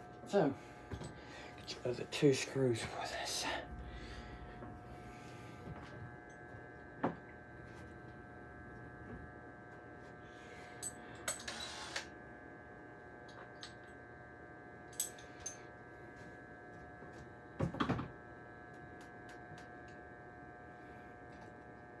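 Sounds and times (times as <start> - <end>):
metal hardware clicking and rattling: 14.9 - 15.6.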